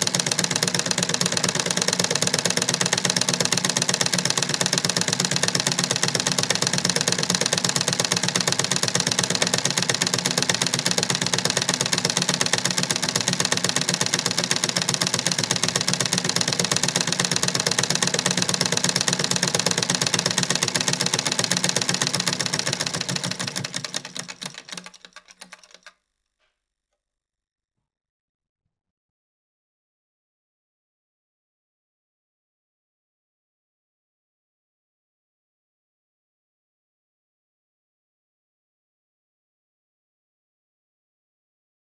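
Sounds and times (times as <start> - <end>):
treadle sewing machine clatter: 0.0 - 25.9.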